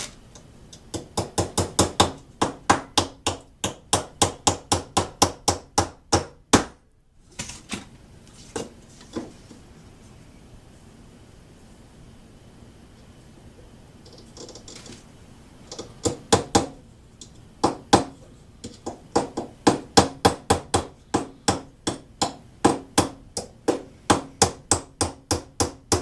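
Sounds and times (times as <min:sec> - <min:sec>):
hammer knocking nails into wood: 0:00.9 - 0:06.8, 0:17.6 - 0:26.0.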